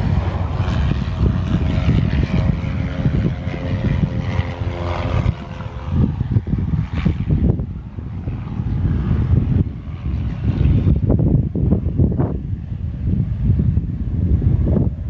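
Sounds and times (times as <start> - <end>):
propeller airplane engine humming: 0.0 - 15.0
wind buffeting on microphone: 0.0 - 15.0.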